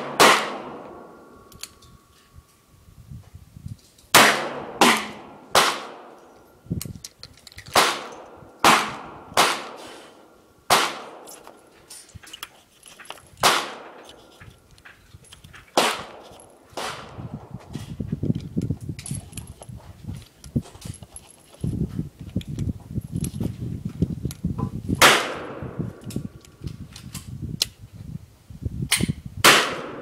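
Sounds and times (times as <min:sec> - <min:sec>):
revolver gunshots: 0:00.0 - 0:01.1, 0:04.2 - 0:06.1, 0:07.8 - 0:09.9, 0:10.7 - 0:11.2, 0:15.8 - 0:16.2, 0:25.0 - 0:25.8, 0:29.5 - 0:30.0.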